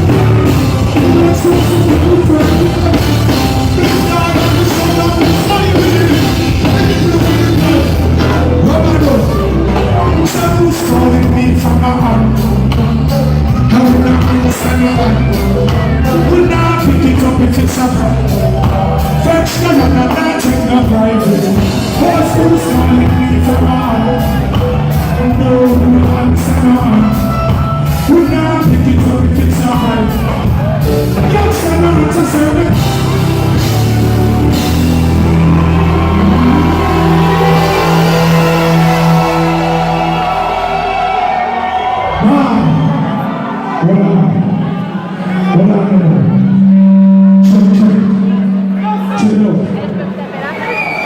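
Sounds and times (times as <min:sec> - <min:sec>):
drum beat: 0:00.0 - 0:27.0, 0:28.8 - 0:41.8
person singing: 0:00.0 - 0:30.5
pulsing bass line: 0:00.0 - 0:50.1.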